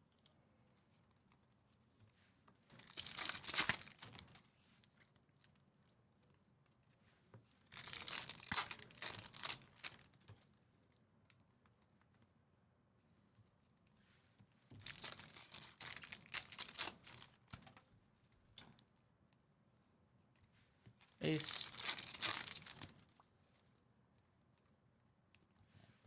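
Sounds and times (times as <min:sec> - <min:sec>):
wrappers torn and crinkled: 0:02.7 - 0:04.4, 0:07.7 - 0:10.1, 0:14.8 - 0:17.5, 0:21.3 - 0:23.2.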